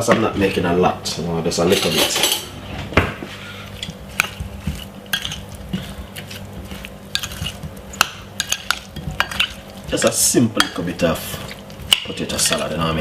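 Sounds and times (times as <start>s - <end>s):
utensil mixing in bowl: 3.4s - 13.0s
utensil clinking against bowl: 3.8s - 12.8s.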